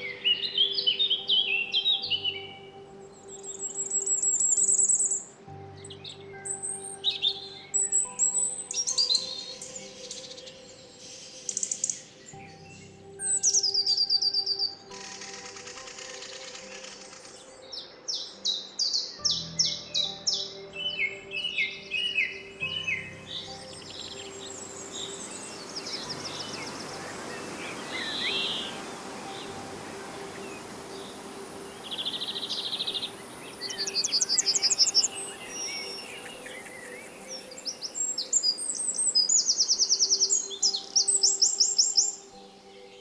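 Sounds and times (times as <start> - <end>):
woods hiss: 0.0 - 18.5, 21.8 - 43.0
songbirds singing: 0.0 - 43.0.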